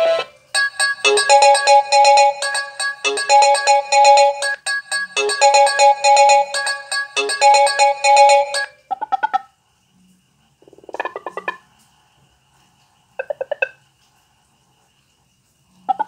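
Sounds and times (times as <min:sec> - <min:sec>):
ringtone quick note runs: 0:00.6 - 0:08.7
phone ringtone melody: 0:00.6 - 0:08.8.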